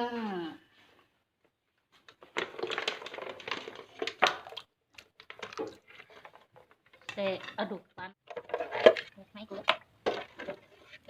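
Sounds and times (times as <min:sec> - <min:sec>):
snail shells clattering and crackling: 0:02.1 - 0:07.6, 0:08.2 - 0:10.8.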